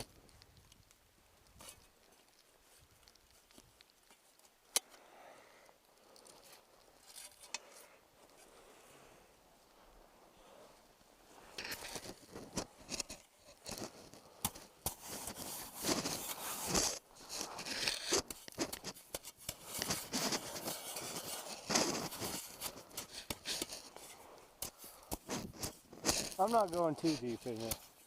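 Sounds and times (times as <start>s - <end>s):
shovel crunching and scraping snow: 11.3s - 28.0s.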